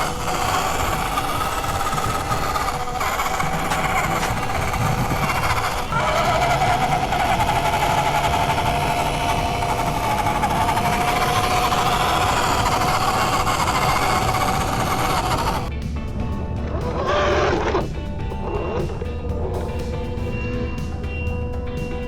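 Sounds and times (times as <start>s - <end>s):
electric motor whining: 0.0s - 15.7s.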